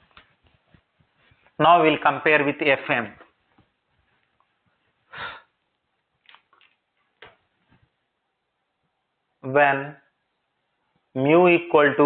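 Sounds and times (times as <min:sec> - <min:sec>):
person sniffing breath: 0:05.0 - 0:05.6.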